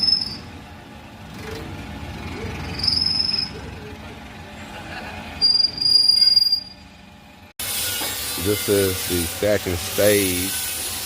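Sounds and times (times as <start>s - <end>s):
steel squealing in ring roller: 0.0s - 0.6s, 2.5s - 3.7s, 5.4s - 6.9s, 7.6s - 11.0s.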